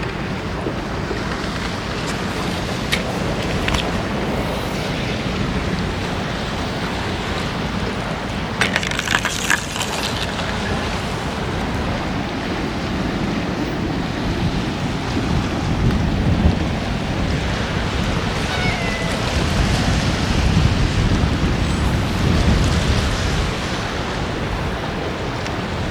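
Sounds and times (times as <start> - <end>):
wind buffeting microphone: 0.0 - 25.9
clicks and rustles: 8.6 - 11.0.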